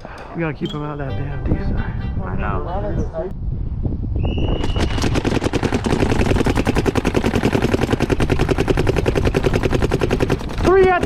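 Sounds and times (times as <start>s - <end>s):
wind on microphone: 0.5s - 7.3s
paintball marker rapid fire: 4.5s - 11.0s.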